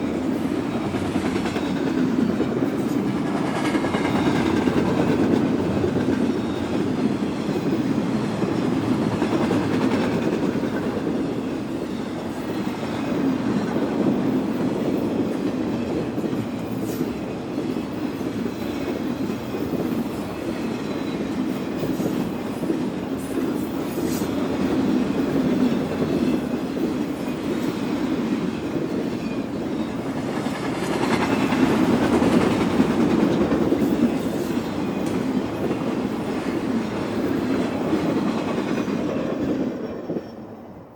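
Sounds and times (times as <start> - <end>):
clickety-clack of train cars: 0.0 - 40.9
train wheels rumbling on rail: 0.0 - 40.9.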